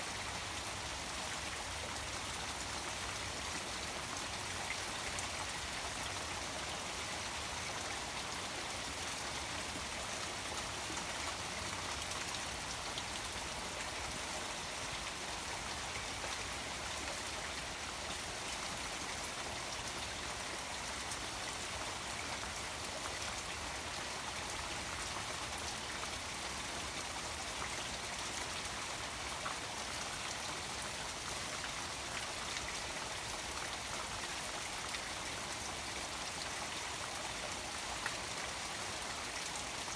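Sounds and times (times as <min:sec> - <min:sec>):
rain pattering on pond water: 0:00.0 - 0:39.9
small waterfall running: 0:00.0 - 0:39.9.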